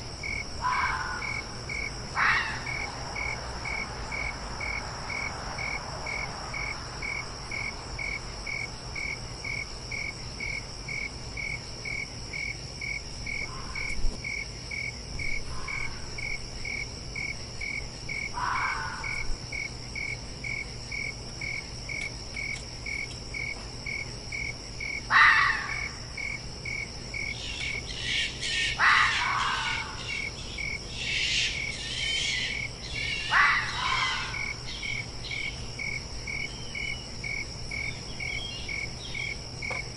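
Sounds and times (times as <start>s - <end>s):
crickets chirping: 0.0s - 39.9s
steady insect hum: 0.0s - 39.9s
fox calling in rough bursts: 0.6s - 2.9s, 18.3s - 19.3s, 25.1s - 26.0s, 28.0s - 30.3s, 31.0s - 34.7s.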